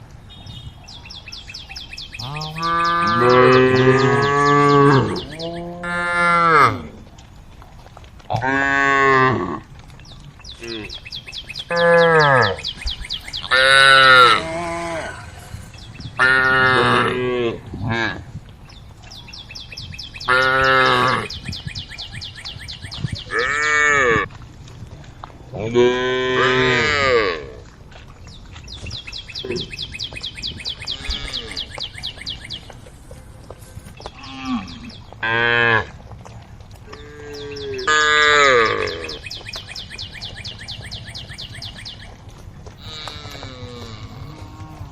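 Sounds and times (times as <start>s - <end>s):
cattle mooing: 2.2s - 7.0s, 11.6s - 12.7s, 13.4s - 15.5s, 16.2s - 18.2s, 25.6s - 27.6s, 30.8s - 31.8s, 36.9s - 39.2s, 42.8s - 44.9s.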